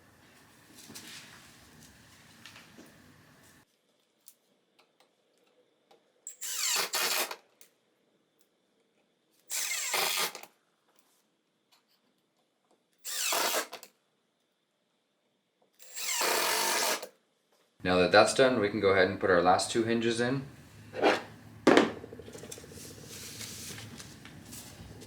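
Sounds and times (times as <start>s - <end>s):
power drill driving screws: 6.3s - 7.4s, 9.5s - 10.5s, 13.0s - 13.9s, 15.8s - 17.1s.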